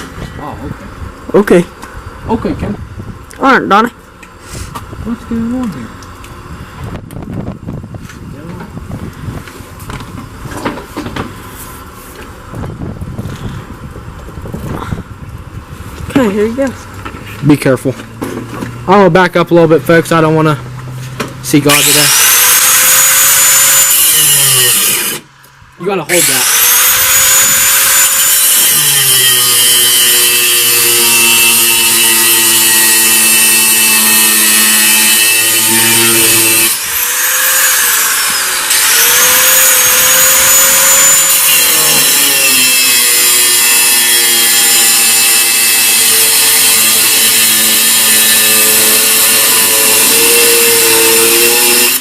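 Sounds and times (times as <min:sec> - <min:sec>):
angle grinder cutting steel: 0:21.5 - 0:25.4, 0:26.0 - 0:52.0.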